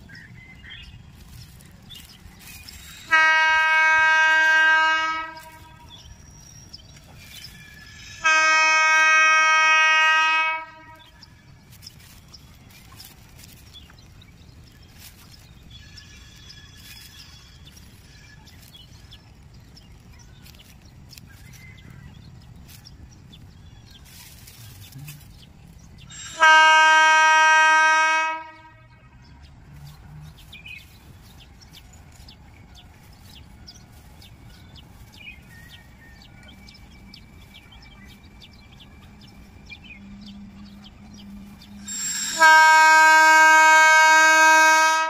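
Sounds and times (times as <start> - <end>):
low steady rumble: 0.0 - 41.9
locomotive horn blast: 2.9 - 6.0, 8.1 - 11.3, 26.1 - 29.1, 40.7 - 45.0.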